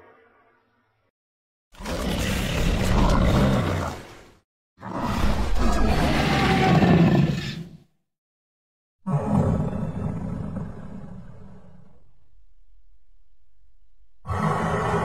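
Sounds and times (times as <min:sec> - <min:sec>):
deep monster roars: 0:01.8 - 0:04.1, 0:04.8 - 0:07.7, 0:09.0 - 0:12.1, 0:14.2 - 0:15.0.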